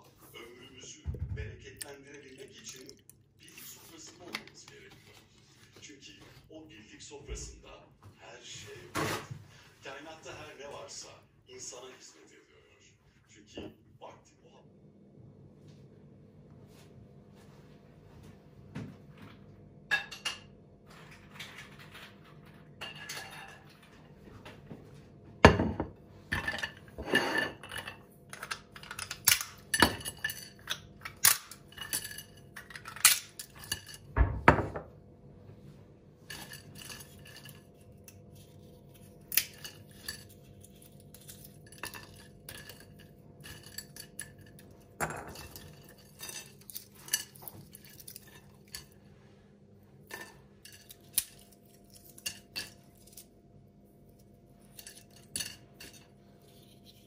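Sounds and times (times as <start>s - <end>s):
dishes and cutlery clinking: 1.1s - 6.4s, 19.9s - 34.9s, 36.2s - 49.0s, 50.0s - 53.3s, 54.1s - 57.0s.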